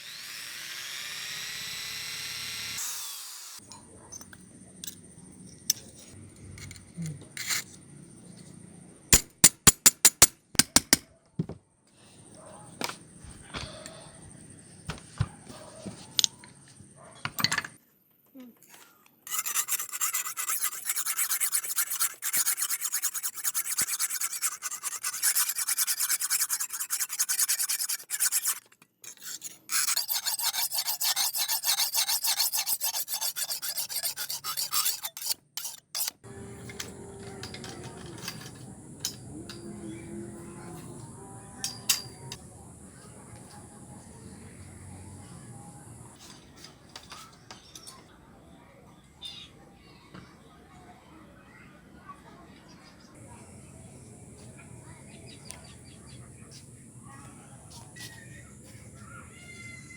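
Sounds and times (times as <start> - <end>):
steel rasping back and forth: 0.0 - 3.6, 19.2 - 42.4.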